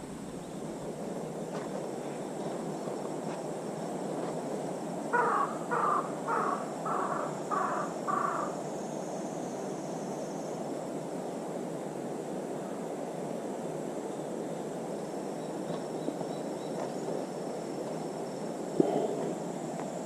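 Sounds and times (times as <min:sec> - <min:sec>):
steady background noise: 0:00.0 - 0:20.0.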